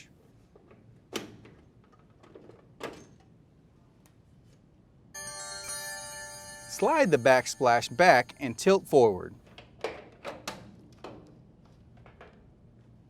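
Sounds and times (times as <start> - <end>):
background music chord: 5.2 - 9.3.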